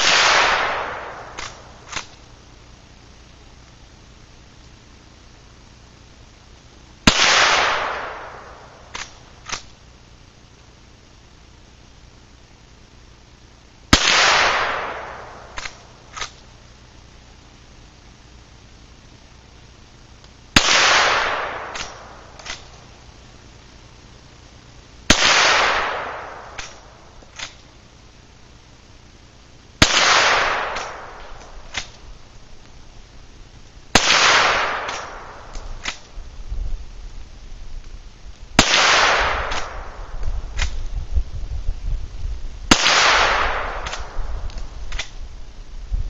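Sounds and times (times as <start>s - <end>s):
rifle shots with echo: 0.0s - 2.3s, 7.0s - 9.8s, 13.9s - 16.4s, 20.6s - 23.0s, 25.1s - 27.7s, 29.8s - 32.1s, 33.9s - 36.2s, 38.6s - 40.8s, 42.7s - 45.2s.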